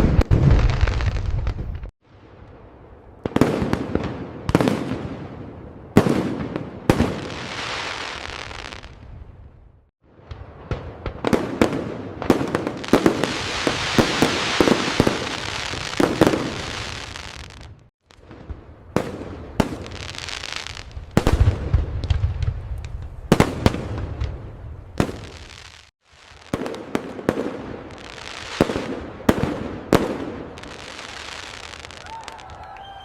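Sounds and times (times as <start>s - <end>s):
fireworks sharp bangs: 0.0s - 1.9s, 10.2s - 22.6s, 23.2s - 32.6s
fireworks crackling: 0.0s - 5.4s, 6.0s - 9.1s, 10.1s - 33.0s
deep fireworks booms: 0.0s - 32.6s.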